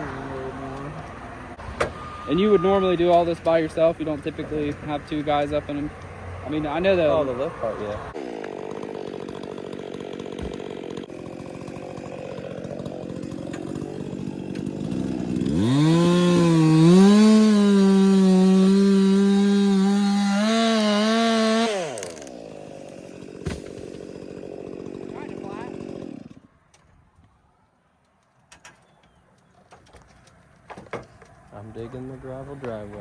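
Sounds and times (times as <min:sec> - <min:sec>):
chainsaw cutting wood: 0:01.8 - 0:26.5.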